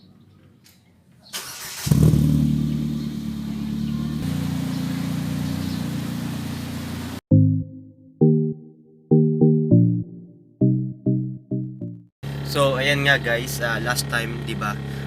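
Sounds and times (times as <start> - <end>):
car engine starting and idling: 1.4 - 7.2.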